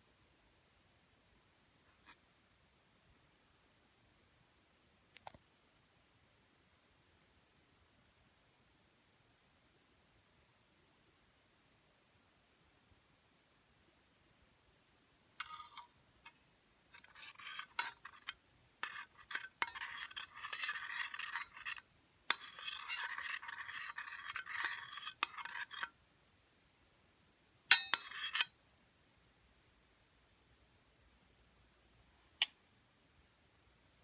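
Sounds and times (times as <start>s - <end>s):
utensil scraping in a dish: 15.4s - 15.9s, 16.9s - 26.0s, 27.7s - 28.5s
sharp ringing clink: 27.7s - 28.0s.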